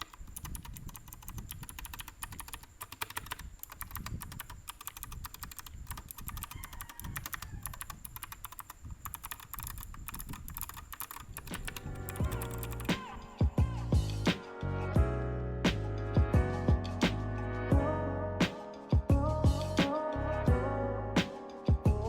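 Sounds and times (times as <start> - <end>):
typing on mechanical keyboard: 0.0 - 13.2
music: 11.6 - 22.0.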